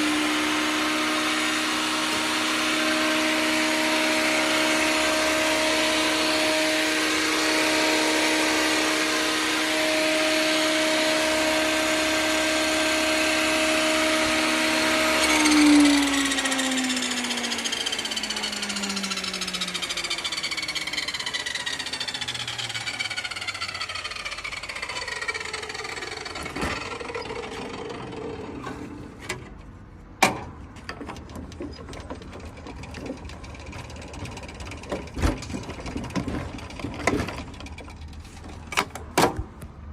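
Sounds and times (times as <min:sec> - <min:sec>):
table saw coasting down whine: 0:00.0 - 0:29.1
knocks and clunks: 0:28.6 - 0:33.3, 0:34.8 - 0:39.8.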